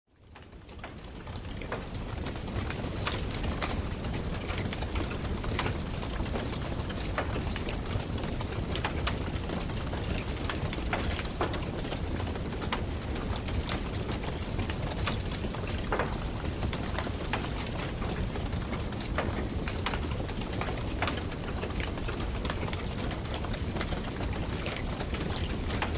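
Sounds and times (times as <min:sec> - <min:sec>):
low rumble of flames: 0:00.2 - 0:25.9
campfire crackling and popping: 0:00.4 - 0:25.9.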